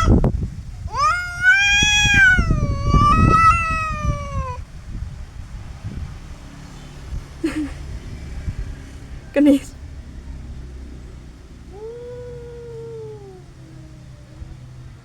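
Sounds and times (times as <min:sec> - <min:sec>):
cat yowling: 0:00.0 - 0:00.2, 0:00.8 - 0:04.6, 0:11.7 - 0:14.7.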